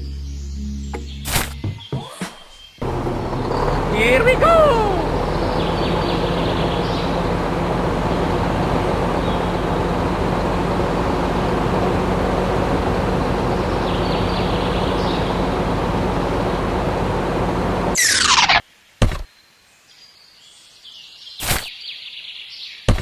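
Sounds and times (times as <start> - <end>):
low hum: 2.8 - 18.5.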